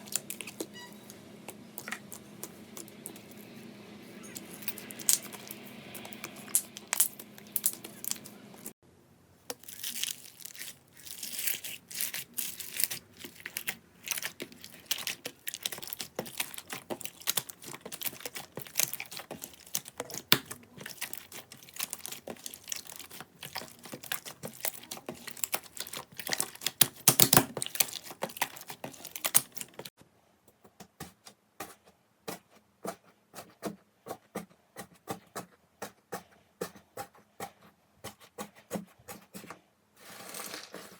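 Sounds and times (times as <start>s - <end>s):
slime squeezed crackling: 0.0s - 0.9s, 4.1s - 8.7s, 9.5s - 29.9s.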